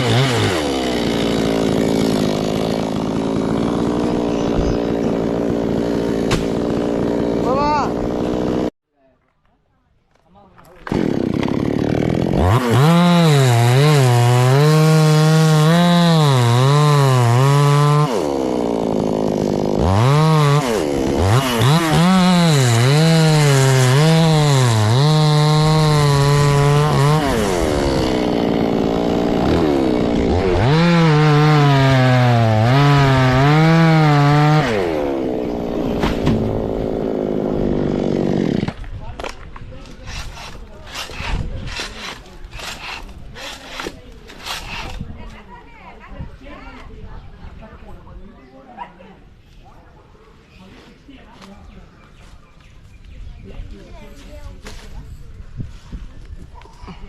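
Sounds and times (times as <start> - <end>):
chainsaw cutting tree trunk: 0.0 - 8.7, 10.8 - 45.2.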